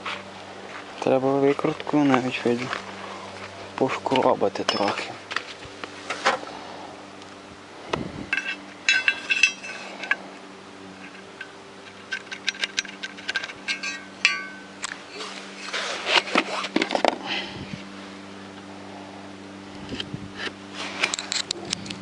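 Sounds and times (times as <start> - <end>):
ringing metallic clinks: 4.6 - 5.2, 8.3 - 10.2, 11.0 - 15.7
screwdriver scraping metal: 12.0 - 16.8.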